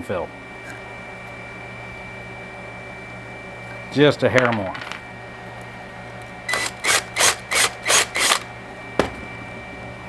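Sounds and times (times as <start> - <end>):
drill cutting into plastic: 6.5 - 8.5.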